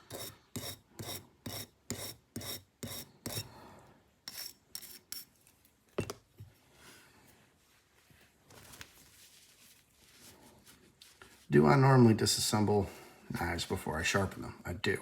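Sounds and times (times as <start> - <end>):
scrubbing on steel knife blade: 0.0 - 3.5, 4.3 - 5.3.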